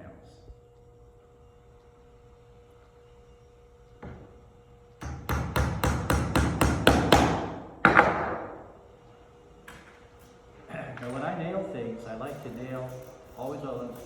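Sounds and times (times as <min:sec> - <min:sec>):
hammer striking nail into wood: 0:05.0 - 0:08.6.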